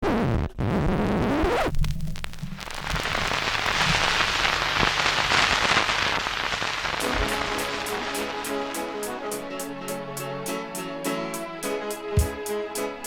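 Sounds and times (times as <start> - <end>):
crackling rain-like noise: 0.4 - 13.0
disco beat: 7.0 - 13.0.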